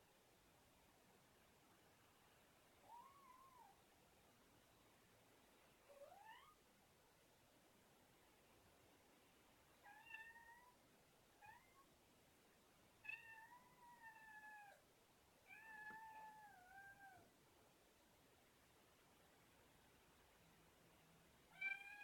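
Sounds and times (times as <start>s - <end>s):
cat meowing: 2.8s - 3.8s, 5.9s - 6.6s, 9.8s - 10.8s, 13.0s - 14.8s, 15.5s - 17.3s, 21.5s - 22.0s.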